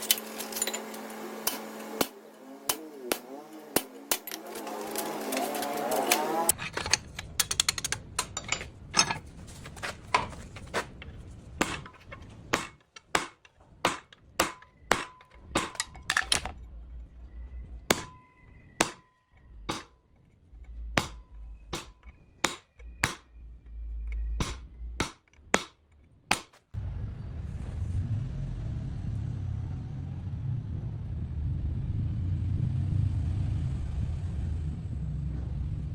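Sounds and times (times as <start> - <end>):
hammer striking iron: 0.1 - 4.4, 11.6 - 16.5, 17.9 - 20.0, 20.7 - 23.4, 24.1 - 26.6
low rumble: 15.3 - 18.8, 19.4 - 25.0, 26.8 - 35.9.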